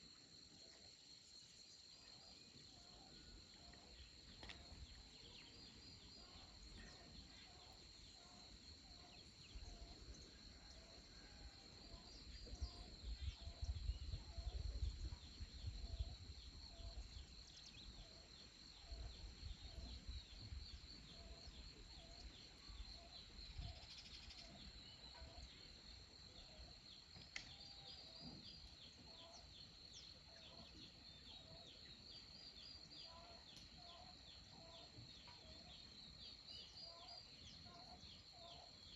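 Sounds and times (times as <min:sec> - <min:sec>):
crickets trilling: 0:01.6 - 0:30.4.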